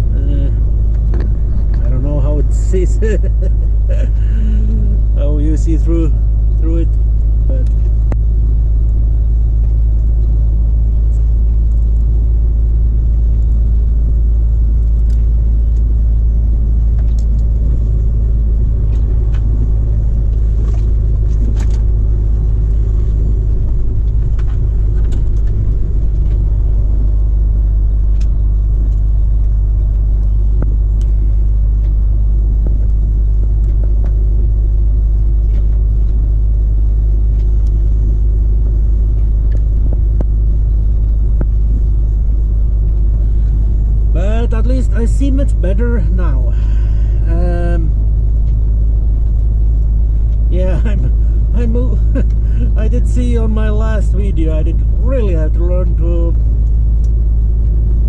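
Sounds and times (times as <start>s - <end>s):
road noise: 0.0s - 58.0s
truck diesel engine rumble: 0.0s - 58.0s.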